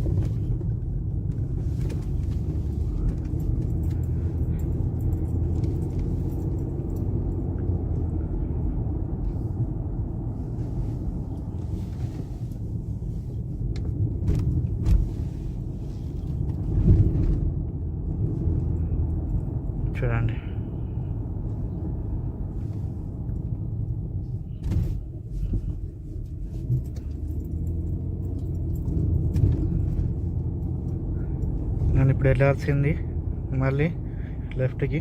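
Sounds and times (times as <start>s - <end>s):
light clicks and rattles: 0.0s - 8.1s, 24.6s - 32.6s
low bumps: 0.0s - 19.8s, 21.0s - 33.5s
engine and road noise in car: 0.0s - 35.0s.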